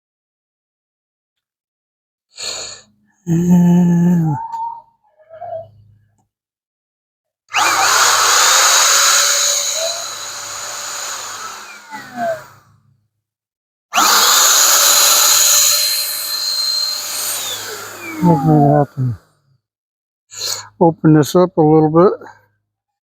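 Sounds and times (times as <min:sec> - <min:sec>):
paint sprayer turbine whining: 0:07.5 - 0:12.8, 0:13.9 - 0:19.2.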